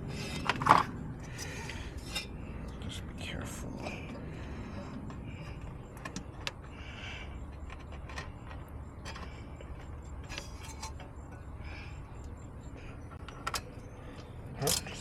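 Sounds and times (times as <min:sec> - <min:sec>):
low steady hum: 0:00.0 - 0:15.0
clicks of hand tools and metal: 0:00.2 - 0:02.8, 0:07.5 - 0:11.5, 0:13.1 - 0:15.0.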